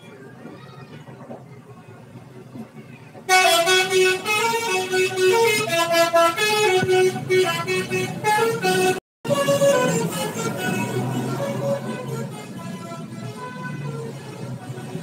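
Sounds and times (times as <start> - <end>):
multi-tone air horn tune: 3.3 - 15.0.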